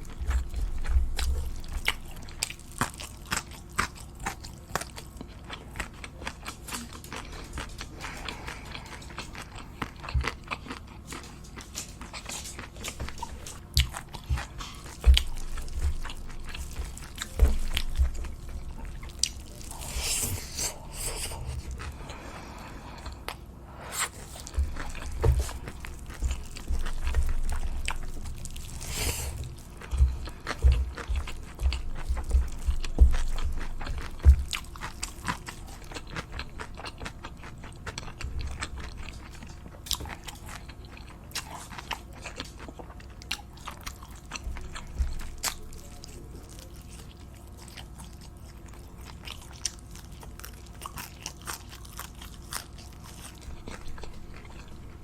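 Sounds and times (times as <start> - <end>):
chewing with wet mouth clicks: 0.0 - 23.4, 24.0 - 55.0
soft thumps: 24.4 - 28.6.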